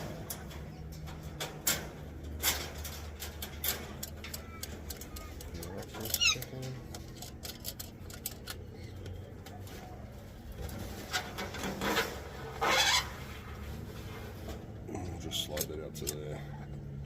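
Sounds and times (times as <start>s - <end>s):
small clicks and knocks: 0.0s - 10.0s, 15.5s - 17.0s
parrots squawking: 4.3s - 6.6s, 12.6s - 13.3s.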